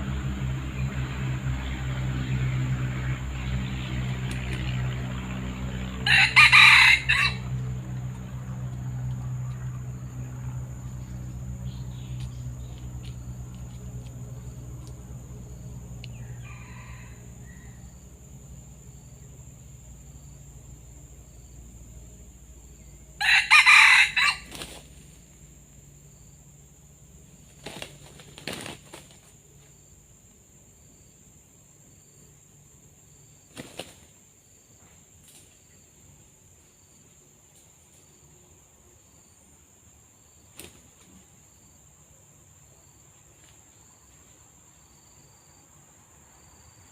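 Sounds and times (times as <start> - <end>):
rooster crowing: 6.0 - 7.6, 16.1 - 18.0, 23.2 - 24.5.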